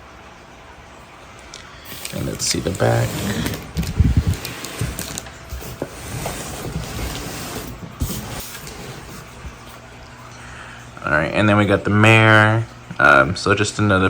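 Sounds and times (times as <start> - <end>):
cardboard rustling and scraping: 1.9 - 9.6.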